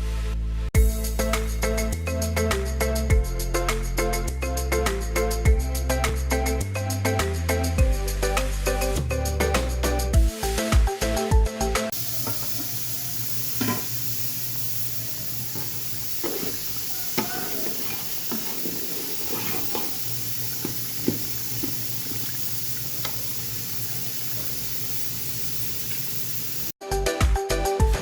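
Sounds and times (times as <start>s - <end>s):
steady hiss: 11.9s - 26.8s
spoon clinking against pot: 12.2s - 14.0s.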